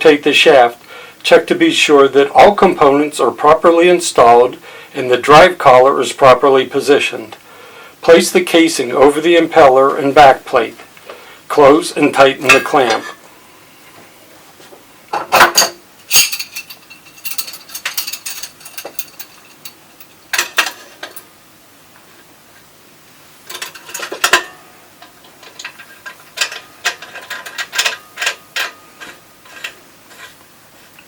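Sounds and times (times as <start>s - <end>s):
metal clinks and ticking: 16.0s - 21.2s.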